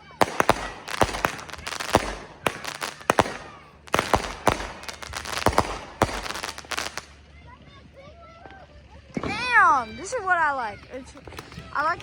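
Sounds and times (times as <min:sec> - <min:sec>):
fireworks bangs and crackles: 0:00.0 - 0:07.3.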